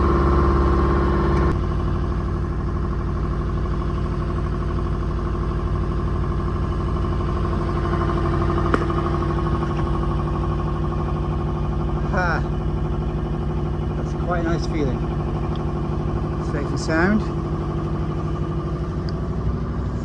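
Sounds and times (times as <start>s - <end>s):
boat engine running: 0.0s - 20.0s
sharp knock: 8.7s - 9.1s.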